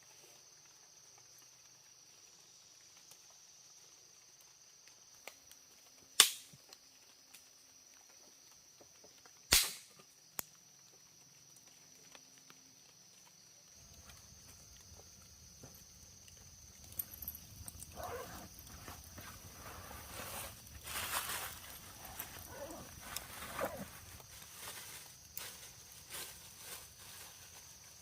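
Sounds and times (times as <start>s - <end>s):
loud sharp cracks: 6.2s - 6.6s, 9.5s - 10.0s.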